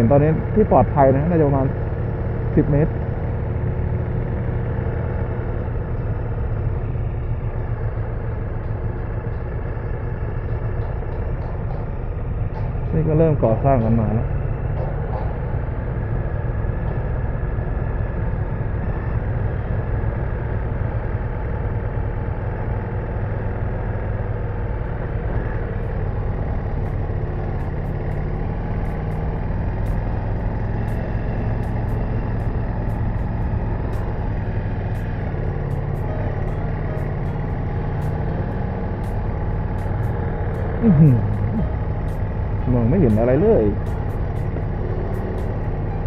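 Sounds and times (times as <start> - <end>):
motorcycle engine running: 0.0 - 46.0.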